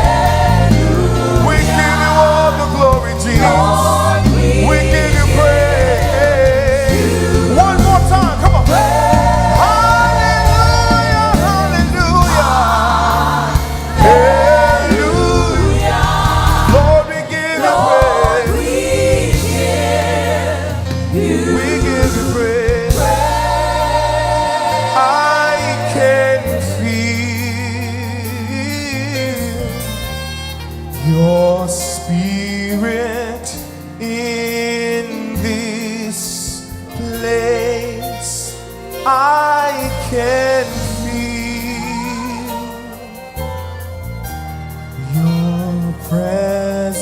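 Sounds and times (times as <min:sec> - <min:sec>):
choir singing in harmony: 0:00.0 - 0:30.1, 0:30.9 - 0:47.0
low bass line: 0:00.0 - 0:33.4
instrumental backing: 0:00.0 - 0:47.0.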